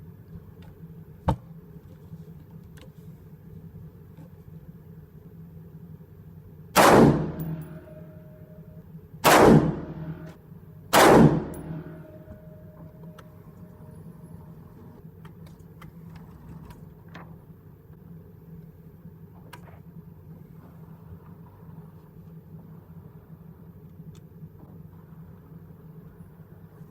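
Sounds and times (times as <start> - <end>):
rifle shots with echo: 6.8 - 8.2, 9.2 - 12.6.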